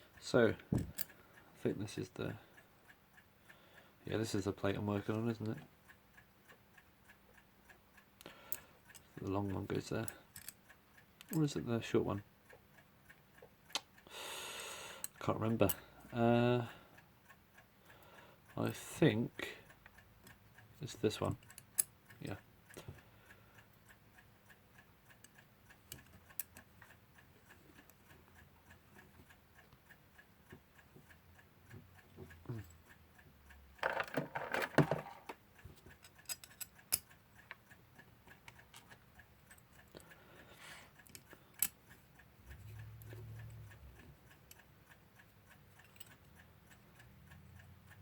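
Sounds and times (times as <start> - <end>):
clock ticking fast: 0.0 - 34.0, 35.4 - 48.0
metal clock parts clinking: 8.9 - 11.6, 33.8 - 37.6, 45.7 - 46.4.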